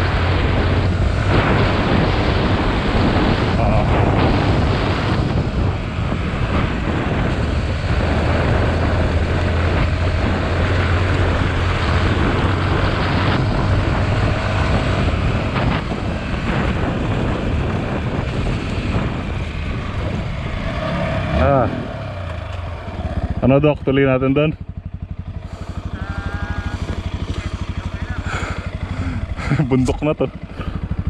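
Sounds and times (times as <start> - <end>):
wind noise on microphone: 0.0 - 22.4
motorcycle engine running: 0.0 - 31.0.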